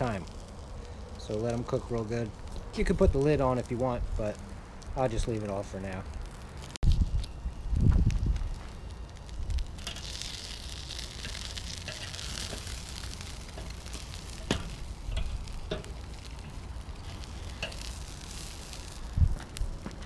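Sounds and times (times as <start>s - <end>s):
chicken sizzling: 0.0s - 20.0s
fat popping: 9.6s - 20.0s.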